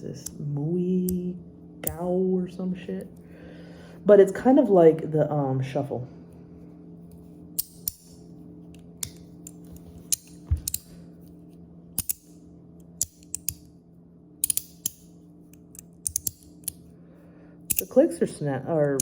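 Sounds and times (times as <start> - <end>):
faint steady hum: 0.0 - 19.0
fidget fan magnetic clicks: 1.0 - 2.1, 11.9 - 13.7, 14.4 - 16.8, 17.7 - 18.0.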